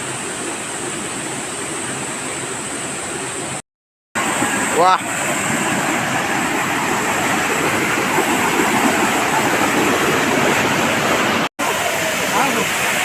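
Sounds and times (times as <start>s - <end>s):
waterfall rushing: 4.2s - 13.0s.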